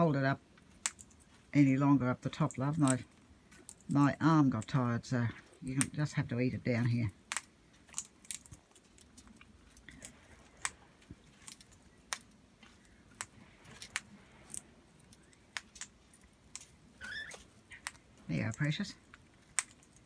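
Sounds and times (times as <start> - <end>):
parrot beak clicking and cracking: 0.6 - 1.3, 7.2 - 20.0.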